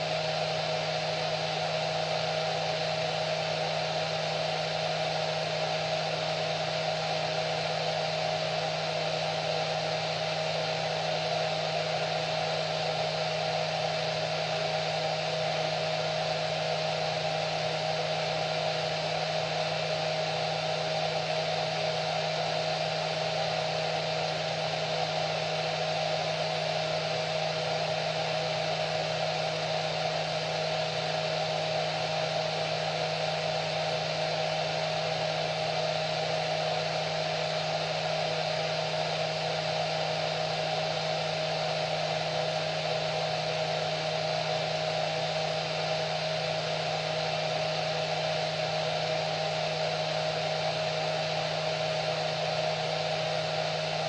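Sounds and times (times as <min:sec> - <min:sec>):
hair dryer running: 0:05.5 - 0:54.0.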